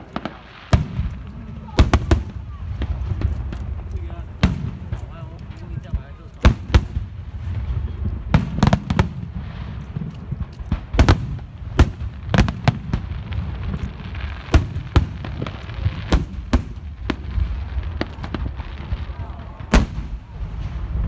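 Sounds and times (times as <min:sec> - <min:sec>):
fireworks bangs: 0:00.0 - 0:21.0.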